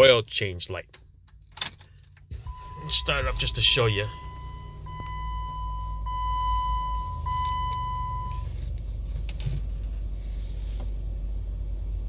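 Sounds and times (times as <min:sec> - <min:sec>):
car engine idling: 0:00.0 - 0:12.0
electronic beep tone: 0:02.5 - 0:08.4.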